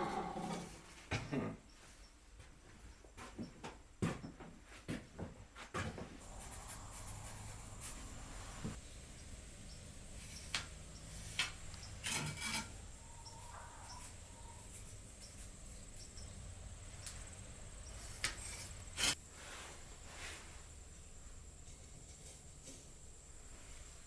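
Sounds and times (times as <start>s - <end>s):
tools scraping and knocking: 0.0s - 1.4s, 10.2s - 16.1s, 17.1s - 19.2s, 21.6s - 23.0s.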